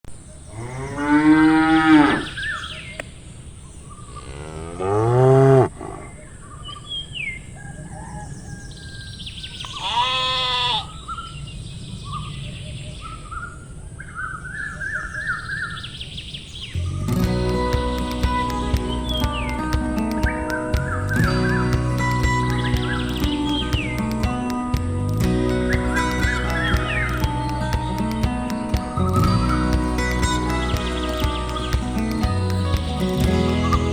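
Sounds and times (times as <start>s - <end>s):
cows mooing: 0.6s - 2.4s
birds chirping faintly: 10.9s - 33.9s.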